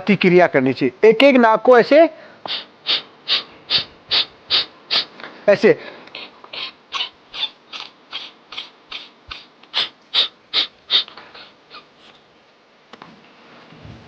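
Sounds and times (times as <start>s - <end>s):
forceful exhalations through nostril: 2.3s - 5.2s.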